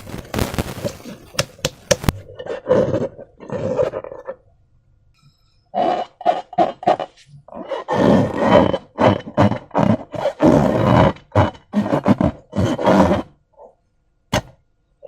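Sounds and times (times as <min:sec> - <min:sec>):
slime squelching: 0:00.0 - 0:04.4.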